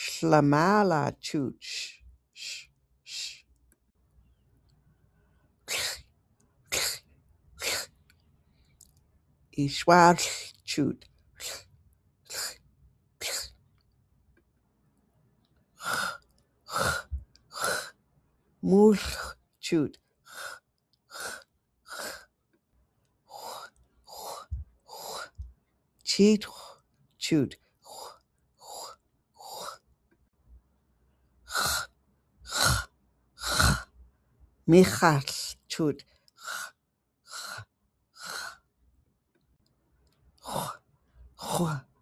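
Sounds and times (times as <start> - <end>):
woman saying breathy hiss sounds: 1.7 - 3.5, 5.7 - 6.0, 6.7 - 7.0, 7.6 - 8.0, 11.4 - 11.7, 12.3 - 12.6, 13.2 - 13.6
woman making hissy fricative sounds: 5.7 - 6.1, 6.7 - 8.0, 11.4 - 11.7, 12.3 - 12.6, 13.2 - 13.6.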